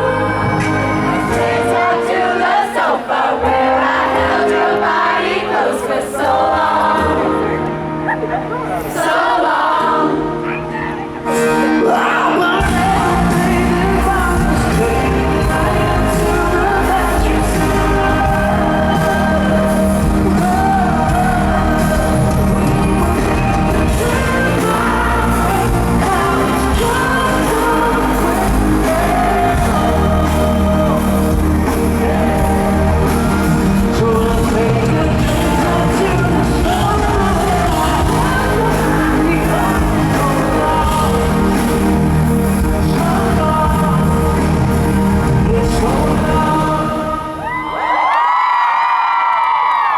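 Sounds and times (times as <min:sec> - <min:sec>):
bass and drums: 0:00.0 - 0:01.4, 0:12.6 - 0:47.1
live pop band playing: 0:00.0 - 0:48.6
person singing lead vocal: 0:00.0 - 0:49.9.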